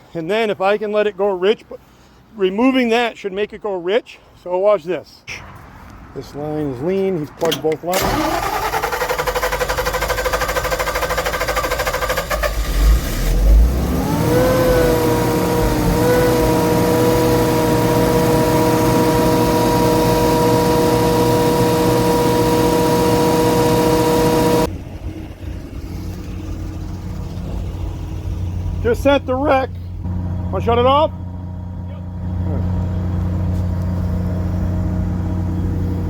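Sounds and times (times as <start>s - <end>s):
generator engine running: 7.9s - 36.0s.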